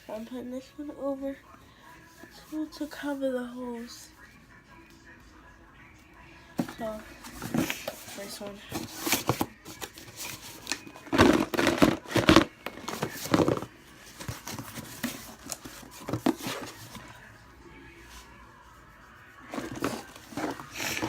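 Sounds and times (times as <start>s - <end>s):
loud rustling and knocking: 11.1s - 16.9s.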